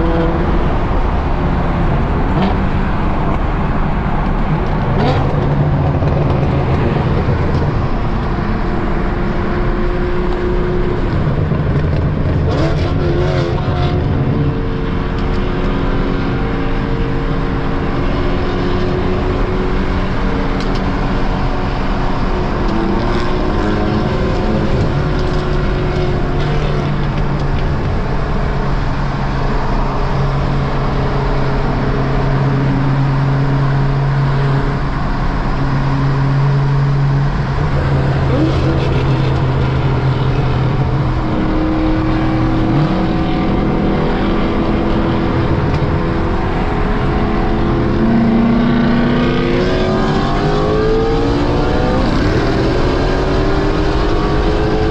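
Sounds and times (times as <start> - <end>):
car engine droning: 0.0 - 54.9.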